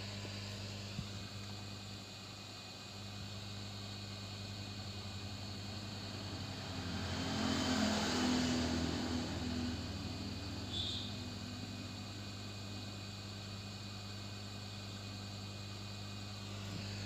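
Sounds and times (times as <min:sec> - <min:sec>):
steady low hum: 0:00.0 - 0:17.0
vehicle engine passing: 0:05.9 - 0:11.0.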